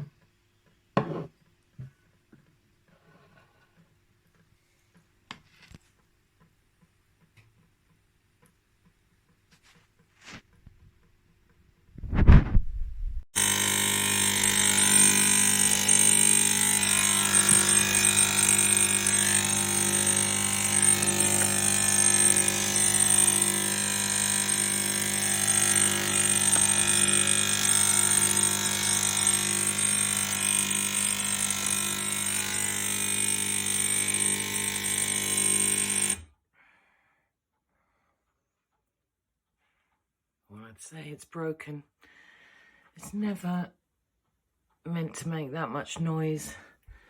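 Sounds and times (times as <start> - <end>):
espresso machine pump buzzing: 13.4 - 36.2.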